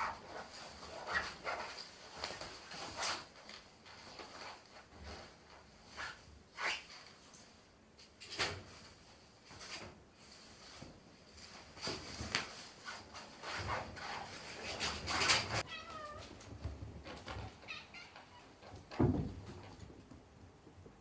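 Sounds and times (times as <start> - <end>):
animals rustling and scuffling: 0.0 - 6.4, 8.3 - 21.0
cat meowing: 15.6 - 16.3, 17.6 - 18.6.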